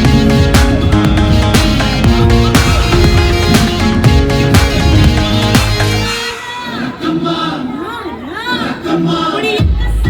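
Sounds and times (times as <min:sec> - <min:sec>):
background music with steady beat: 0:00.0 - 0:06.4.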